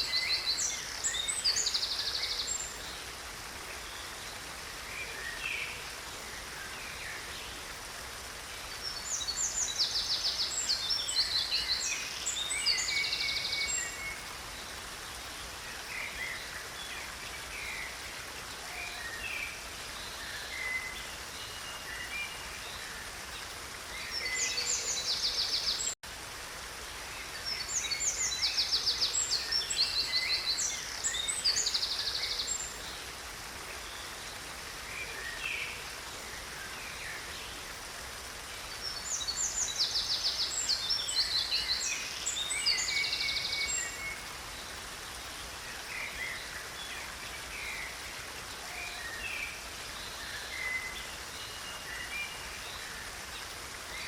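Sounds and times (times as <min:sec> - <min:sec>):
stream rushing: 0:00.0 - 0:54.0.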